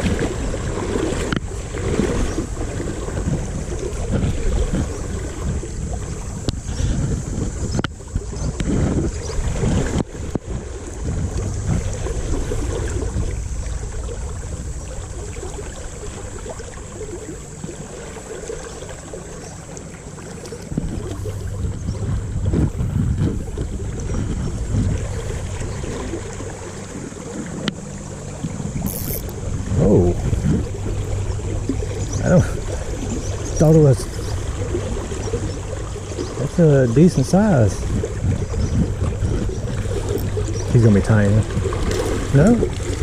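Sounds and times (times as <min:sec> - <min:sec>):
river water flowing: 0:00.0 - 0:43.0
wind buffeting microphone: 0:00.0 - 0:43.0
short clicks: 0:28.8 - 0:29.4.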